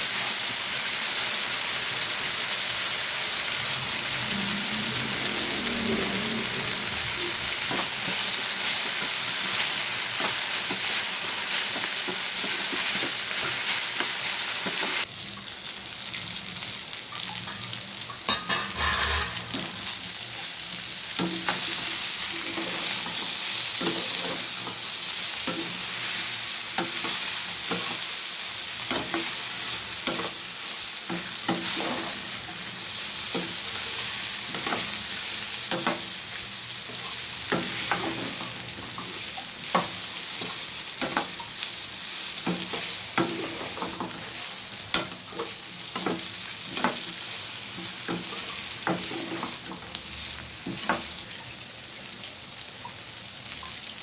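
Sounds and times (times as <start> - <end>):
vegetables sizzling in hot oil: 0.0 - 54.0
spatula scraping and knocking pan: 18.3 - 19.8.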